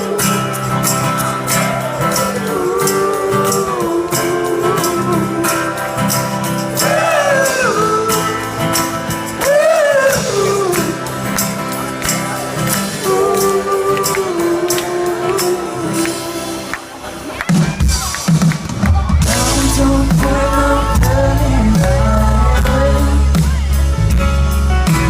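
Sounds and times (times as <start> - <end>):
instrumental backing with beat: 0.0 - 25.0
person singing wordless notes: 1.6 - 6.0, 12.8 - 16.8, 19.2 - 23.8.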